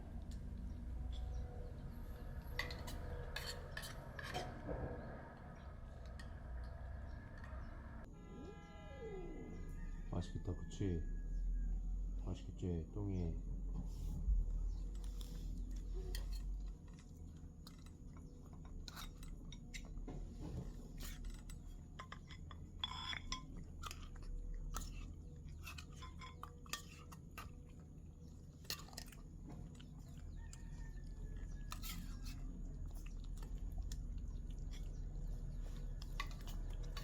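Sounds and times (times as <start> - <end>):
cat chewing food: 23.4 - 37.0.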